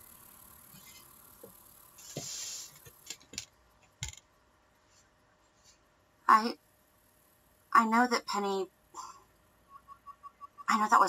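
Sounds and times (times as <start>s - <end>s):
small clicks and knocks: 0.7s - 4.3s
soft rustle: 2.0s - 3.1s, 4.8s - 6.0s.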